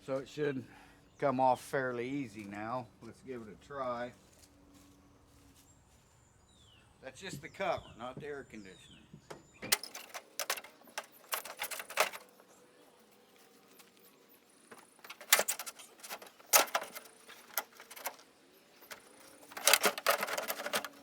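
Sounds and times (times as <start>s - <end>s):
plastic cover clicking and knocking: 9.6s - 12.3s, 14.7s - 18.2s, 18.9s - 21.0s.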